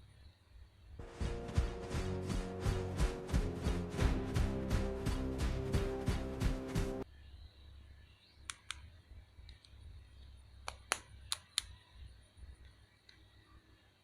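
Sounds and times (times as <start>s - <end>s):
background music: 1.0s - 7.0s.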